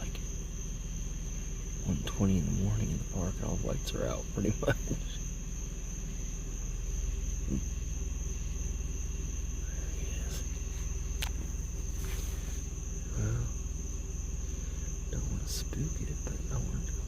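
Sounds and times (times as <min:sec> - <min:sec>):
low steady rumble: 0:00.0 - 0:17.0
night insects chorus: 0:00.0 - 0:17.0.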